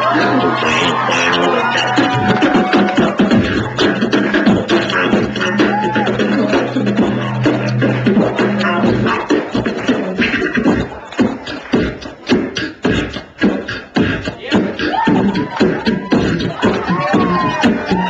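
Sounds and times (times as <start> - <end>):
hummed bass: 0.0 - 10.8
beatboxing mouth percussion: 0.0 - 18.0.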